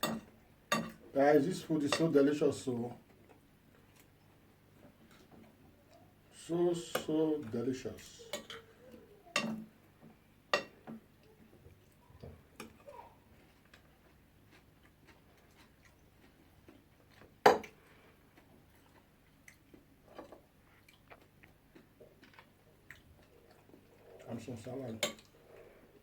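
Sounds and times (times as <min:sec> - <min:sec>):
cutlery clinking against plates: 0:00.0 - 0:01.0, 0:01.9 - 0:02.2, 0:08.3 - 0:08.7, 0:09.3 - 0:09.7, 0:10.5 - 0:11.0, 0:24.8 - 0:25.3
quiet chewing: 0:03.0 - 0:06.3, 0:08.2 - 0:26.0.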